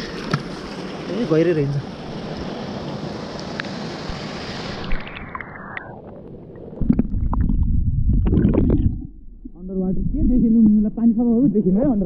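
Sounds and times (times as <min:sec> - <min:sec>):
underwater rumble: 0:04.8 - 0:12.0.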